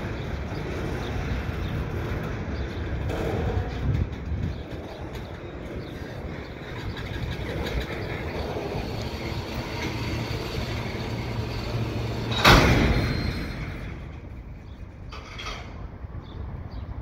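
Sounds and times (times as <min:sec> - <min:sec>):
train rumble with engine hum: 0:00.0 - 0:17.0
rail cars crashing together: 0:06.6 - 0:15.8.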